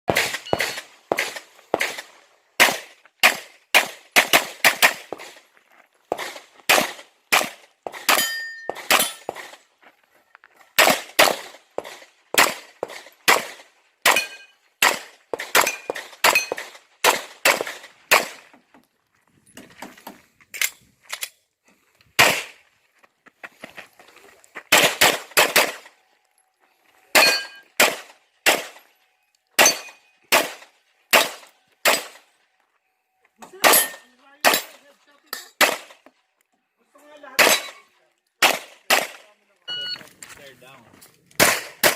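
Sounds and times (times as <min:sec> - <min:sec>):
pistol shots: 0:00.1 - 0:05.4, 0:06.1 - 0:09.6, 0:10.8 - 0:18.5, 0:22.2 - 0:22.6, 0:24.7 - 0:25.9, 0:27.1 - 0:28.9, 0:29.6 - 0:32.2, 0:33.6 - 0:34.8, 0:35.6 - 0:36.0, 0:37.4 - 0:37.8, 0:38.4 - 0:39.3, 0:41.4 - 0:41.9
metallic ringing clang: 0:08.2 - 0:09.3.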